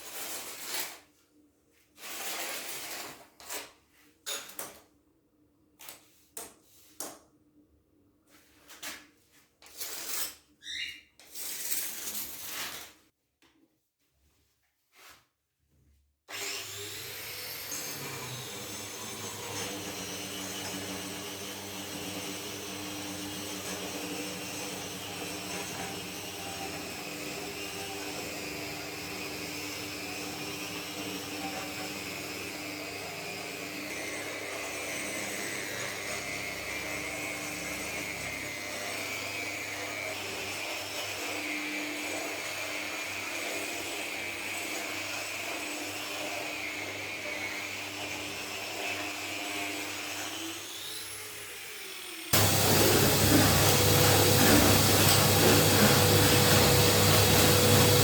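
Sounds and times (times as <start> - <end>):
power tool motor whine: 16.3 - 58.0.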